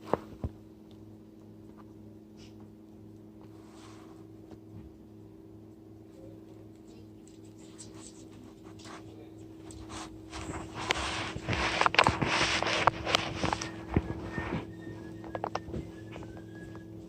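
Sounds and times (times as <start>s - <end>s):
faint steady hum: 0.0s - 17.0s
rustling and scraping with clicks: 6.6s - 17.0s.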